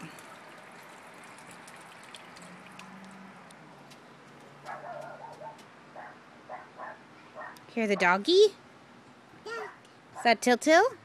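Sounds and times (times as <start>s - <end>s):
small water splashes: 0.0s - 4.4s
water trickling and dripping: 0.0s - 5.1s
distant dog barking: 4.6s - 8.2s.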